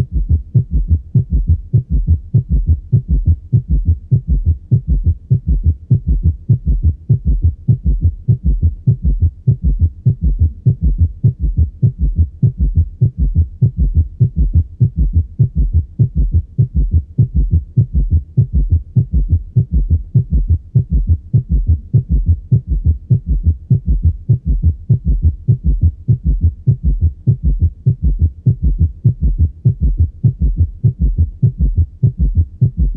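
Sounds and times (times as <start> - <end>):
fast galloping heartbeat: 0.0 - 32.9.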